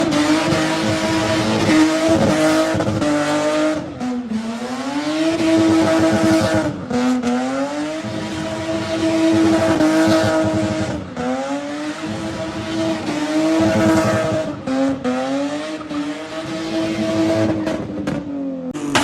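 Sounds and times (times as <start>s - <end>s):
car engine at high revs: 0.0s - 19.0s.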